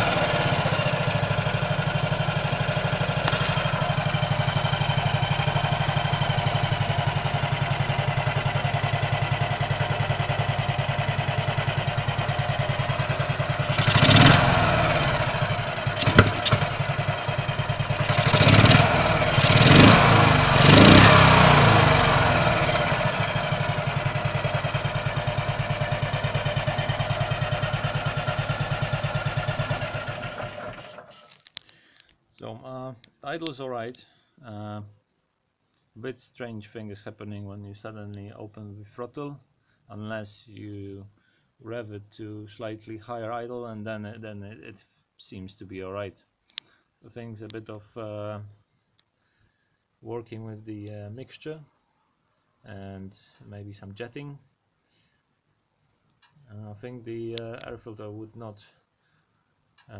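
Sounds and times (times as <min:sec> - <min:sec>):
scooter engine idling and revving: 0:00.0 - 0:31.3.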